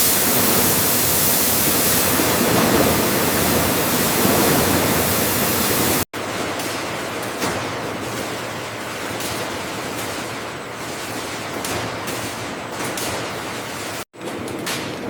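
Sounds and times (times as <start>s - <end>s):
machine hum with clicking: 0.0s - 15.0s.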